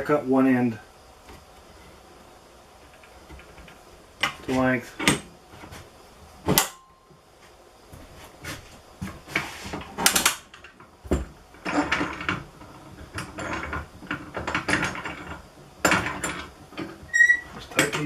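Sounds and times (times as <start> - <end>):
metal clamps clanking and rattling: 9.8 - 18.0.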